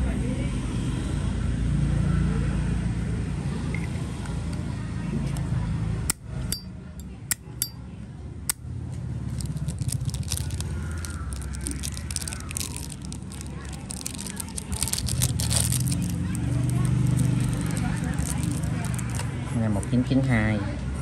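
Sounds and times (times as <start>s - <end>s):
low engine rumble: 0.0s - 21.0s
small clicks and rattles: 9.3s - 19.4s.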